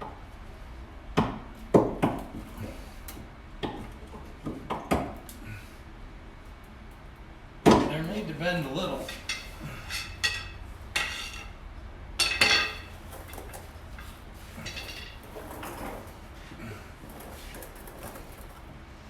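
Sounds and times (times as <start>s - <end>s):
metal parts clanking: 9.0s - 11.5s, 12.2s - 16.1s.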